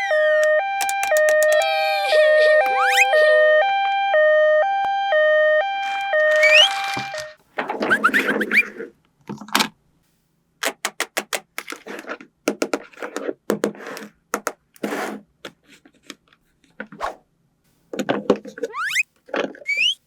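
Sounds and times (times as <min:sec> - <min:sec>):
plastic toy pieces clicking: 0:00.8 - 0:01.7, 0:05.9 - 0:07.4, 0:10.6 - 0:14.8
brief rustle: 0:05.8 - 0:08.7.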